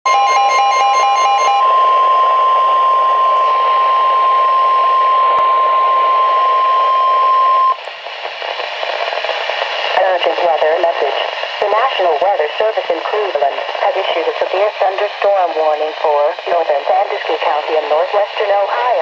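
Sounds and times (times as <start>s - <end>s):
steady warning alarm tone: 0.1s - 7.8s
radio static and hiss: 1.6s - 19.0s.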